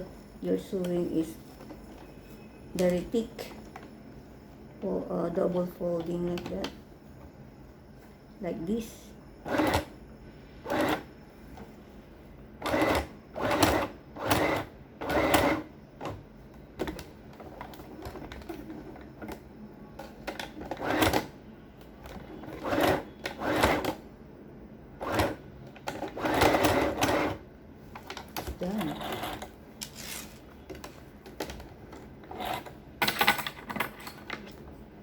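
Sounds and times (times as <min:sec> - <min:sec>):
sewing machine stitching: 0:09.5 - 0:09.9, 0:10.7 - 0:11.1, 0:12.6 - 0:15.7, 0:20.7 - 0:21.3, 0:22.4 - 0:24.0, 0:25.0 - 0:25.4, 0:26.0 - 0:27.4.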